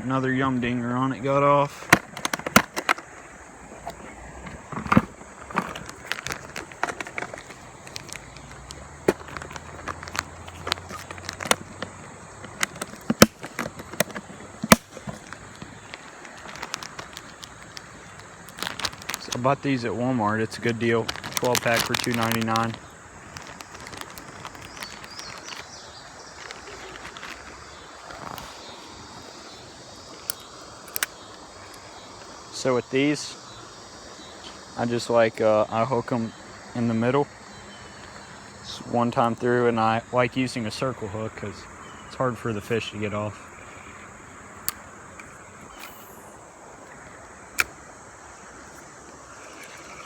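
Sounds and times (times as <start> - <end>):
river water flowing: 0.0 - 39.8, 40.6 - 50.0
steady background hiss: 0.0 - 50.0
sharp clicks: 12.4 - 19.4, 30.2 - 31.8, 44.6 - 46.4.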